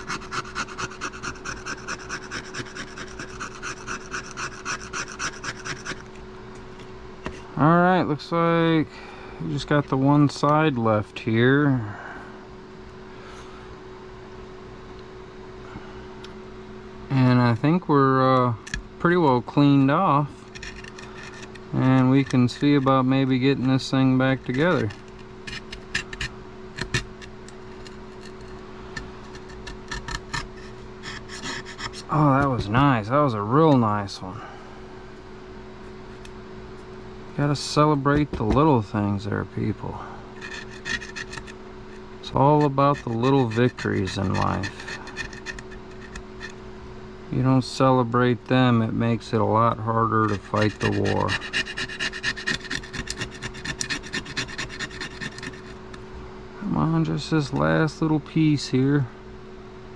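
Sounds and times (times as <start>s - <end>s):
tool scraping phone frame: 0.0s - 6.2s, 18.7s - 33.0s, 40.4s - 46.6s, 50.1s - 56.1s
low electrical hum: 0.0s - 59.9s.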